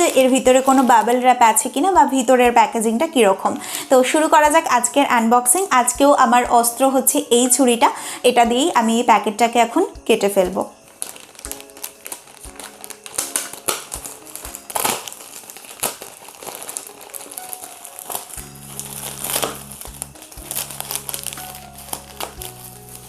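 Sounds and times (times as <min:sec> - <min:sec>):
knife cutting plastic: 0:00.0 - 0:01.2, 0:10.9 - 0:23.0
plastic wrapper crinkling: 0:00.0 - 0:02.8, 0:10.5 - 0:23.0
soft background music: 0:00.0 - 0:23.0.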